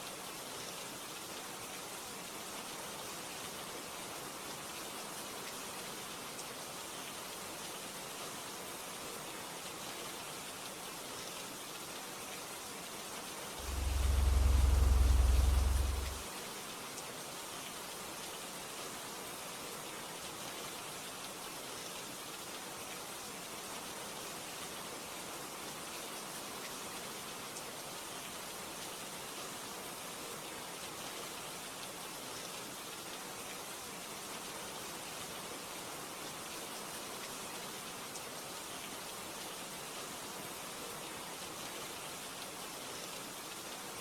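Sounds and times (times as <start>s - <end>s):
steady rain hiss: 13.6s - 16.3s.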